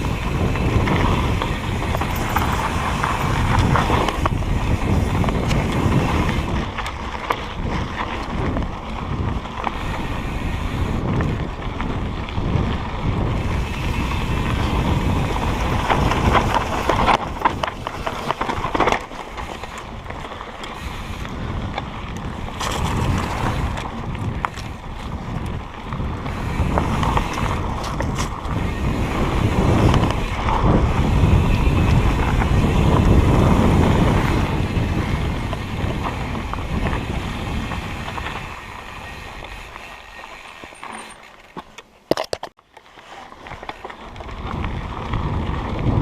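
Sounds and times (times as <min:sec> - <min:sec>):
wind buffeting microphone: 0:00.0 - 0:40.6, 0:43.4 - 0:46.0
clicks and rattles: 0:40.8 - 0:42.6.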